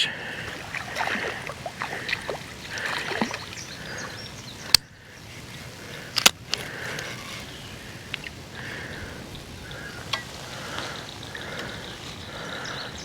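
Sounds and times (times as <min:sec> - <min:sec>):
fish thrashing in water: 0:00.2 - 0:04.2.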